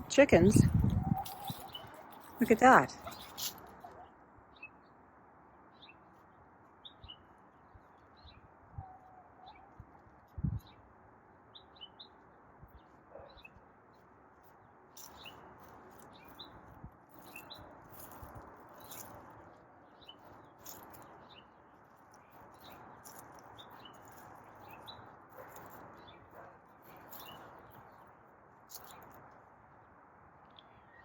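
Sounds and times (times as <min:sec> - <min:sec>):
small birds chirping: 0:00.0 - 0:05.0, 0:11.5 - 0:28.1
steady outdoor hiss: 0:00.0 - 0:31.0.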